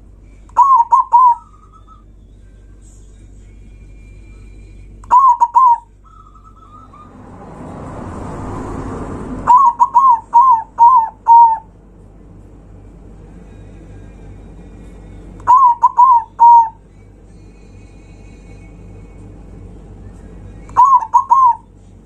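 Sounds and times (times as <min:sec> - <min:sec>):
dove cooing: 0:00.6 - 0:01.8, 0:05.1 - 0:07.1, 0:09.4 - 0:11.7, 0:15.4 - 0:16.8, 0:20.8 - 0:21.6
rush of noise: 0:06.6 - 0:16.9.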